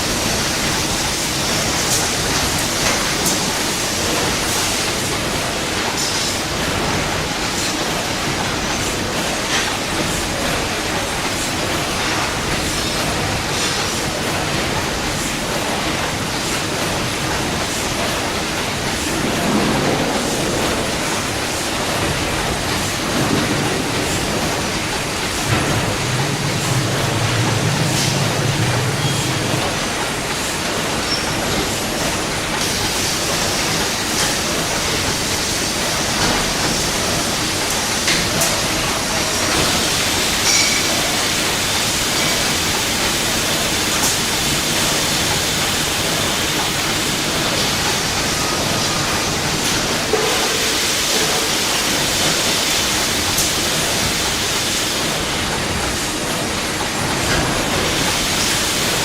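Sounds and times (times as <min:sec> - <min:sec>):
factory machinery running: 0:00.0 - 0:59.0.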